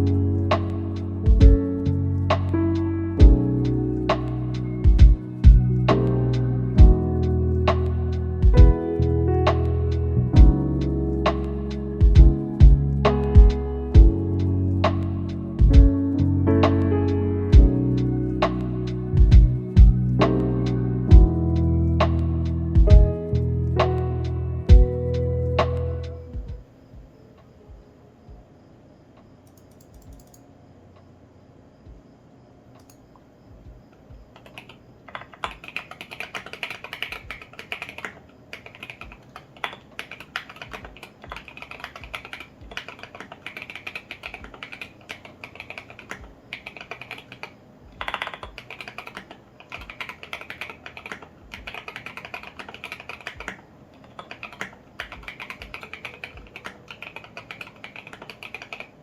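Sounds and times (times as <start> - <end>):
mechanical keyboard typing: 29.5 - 30.4, 34.3 - 59.0
keyboard clatter: 34.3 - 59.0.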